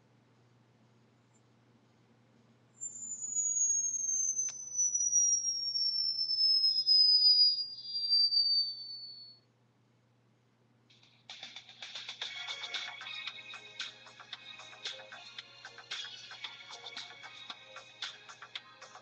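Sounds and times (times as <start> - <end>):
electronic tone gliding downward: 2.8 - 9.0.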